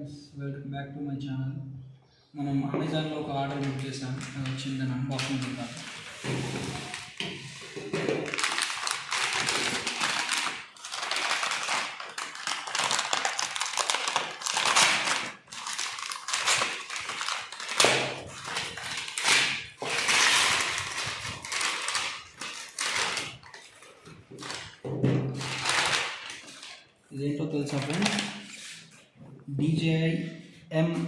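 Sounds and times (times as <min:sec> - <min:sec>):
packaging rustling and crackling: 0:03.5 - 0:26.9, 0:27.6 - 0:28.9.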